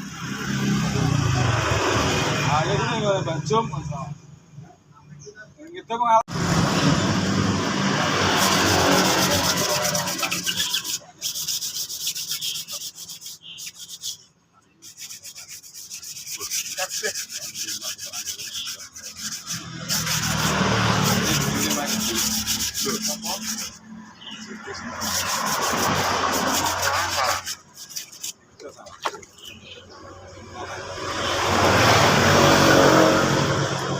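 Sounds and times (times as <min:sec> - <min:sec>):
sandpaper rubbing on metal tank: 0:07.9 - 0:29.6.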